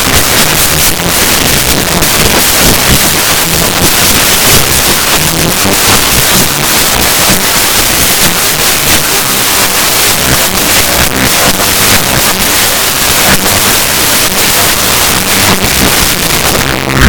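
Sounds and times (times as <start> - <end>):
distorted bass-boosted music: 0.0 - 17.0.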